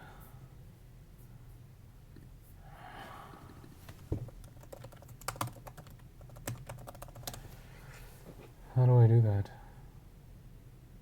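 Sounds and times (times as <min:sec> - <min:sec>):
keyboard typing: 0:04.3 - 0:07.4.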